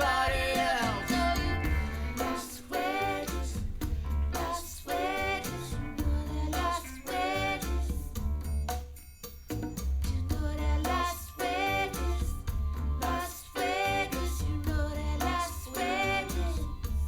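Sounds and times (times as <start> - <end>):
strong bass line: 0.0 - 2.4
woman singing: 0.0 - 8.1, 10.2 - 17.0.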